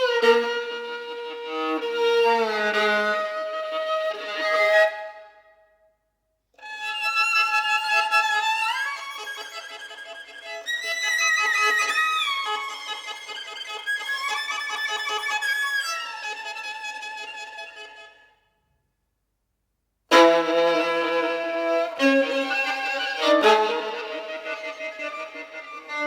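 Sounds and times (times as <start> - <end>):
experimental violin music: 0.0 - 5.4, 6.6 - 18.4, 20.1 - 26.0.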